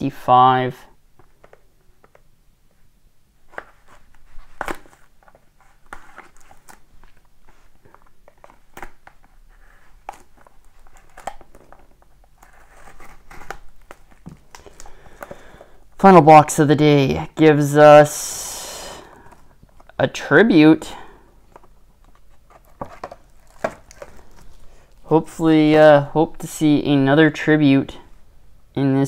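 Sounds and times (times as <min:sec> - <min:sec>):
packaging rustling and crinkling: 0:03.4 - 0:15.8, 0:21.4 - 0:25.1.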